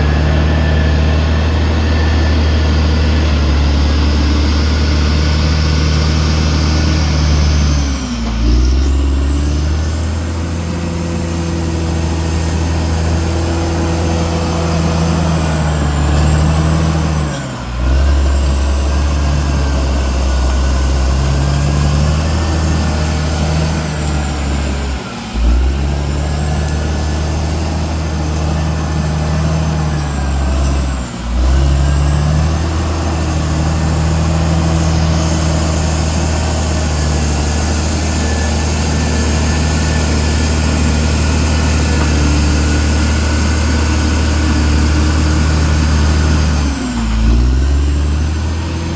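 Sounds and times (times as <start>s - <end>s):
bulldozer diesel engine running: 0.0s - 48.9s.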